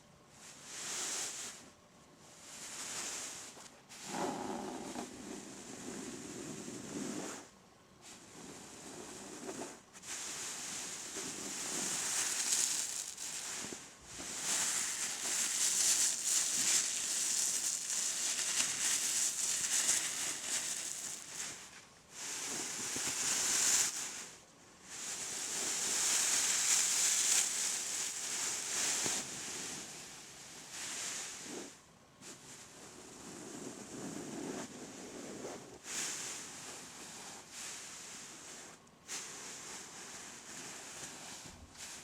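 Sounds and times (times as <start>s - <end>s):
bean bag crinkling: 11.5s - 13.6s, 14.4s - 21.5s, 26.0s - 28.3s.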